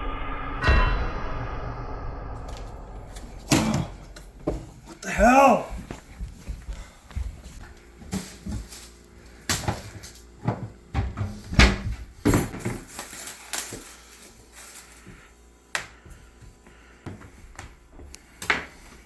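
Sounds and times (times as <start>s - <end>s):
objects knocking and clattering: 2.5s - 8.8s, 9.5s - 13.2s.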